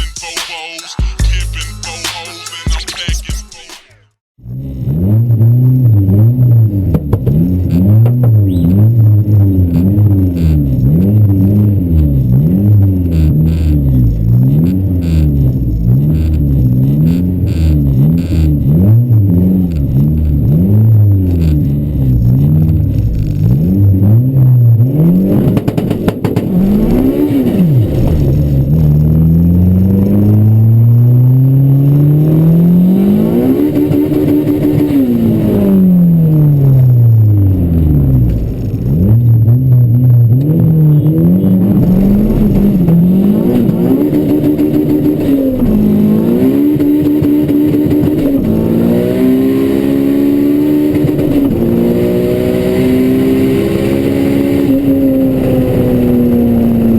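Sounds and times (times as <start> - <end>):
car engine revving: 4.4 - 56.9.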